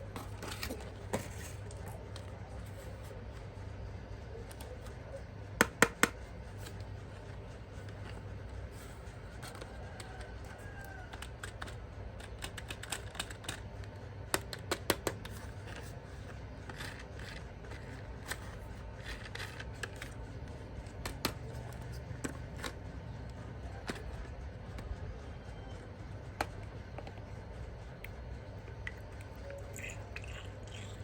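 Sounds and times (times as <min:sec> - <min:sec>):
plastic parts clicking and snipping: 0:09.4 - 0:25.0.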